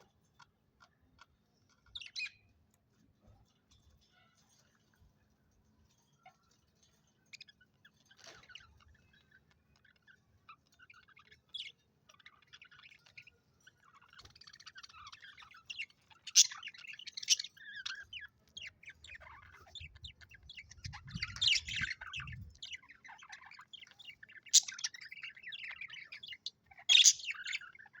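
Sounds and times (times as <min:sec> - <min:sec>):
budgerigars chirping: 0:00.0 - 0:02.6, 0:07.3 - 0:28.0.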